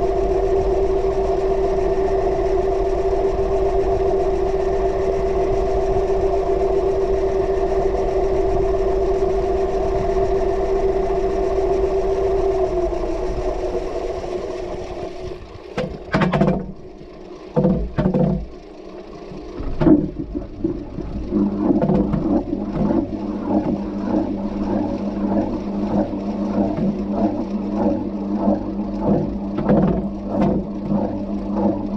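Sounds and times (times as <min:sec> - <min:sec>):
washing machine motor hum: 0:00.0 - 0:31.9
loud knocks: 0:15.8 - 0:16.8, 0:17.6 - 0:18.6, 0:19.6 - 0:23.8
water splashing: 0:19.3 - 0:31.9.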